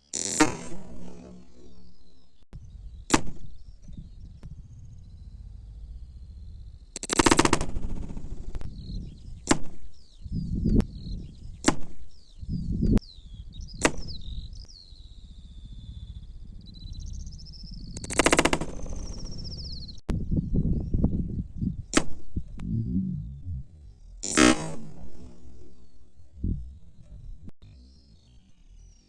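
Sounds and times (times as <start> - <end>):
sharp cracks: 3.1 - 4.6, 6.9 - 8.8, 18.0 - 19.4
air rifle shots: 7.0 - 8.6, 18.0 - 19.3
birds chirping: 8.4 - 24.3, 25.6 - 29.0.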